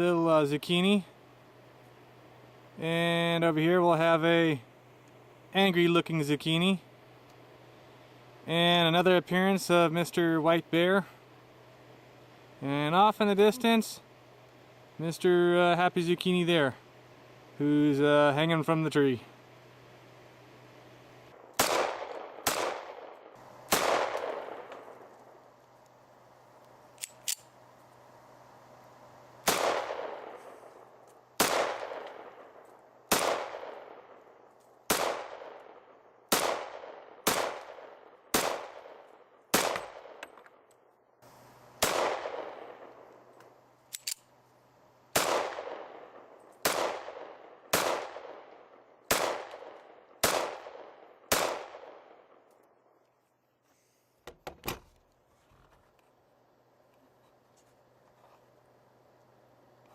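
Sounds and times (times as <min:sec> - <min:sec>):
pistol shots with ringing echo: 0:21.4 - 0:25.1, 0:29.4 - 0:34.2, 0:34.9 - 0:40.4, 0:41.8 - 0:43.1, 0:45.1 - 0:52.4.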